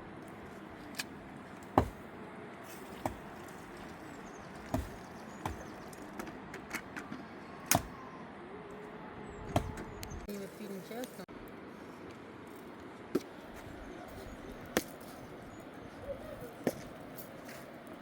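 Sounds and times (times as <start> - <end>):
sharp knocks: 1.8 - 2.0.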